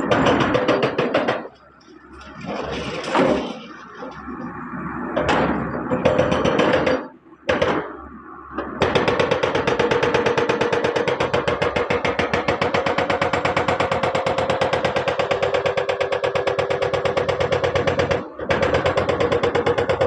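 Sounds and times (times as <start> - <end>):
excavator rapid knocking: 0.0 - 1.5, 5.2 - 7.8, 8.8 - 20.0.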